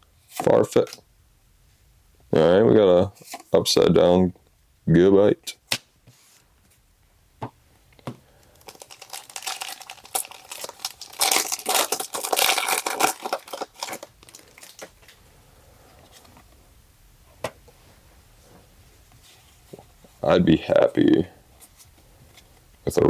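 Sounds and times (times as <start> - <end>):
foil wrapper crinkling and tearing: 8.5 - 15.2.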